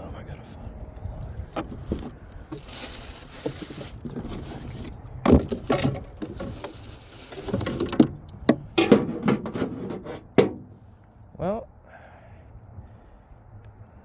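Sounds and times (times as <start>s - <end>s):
fishing gear knocking and rattling: 3.4s - 9.6s.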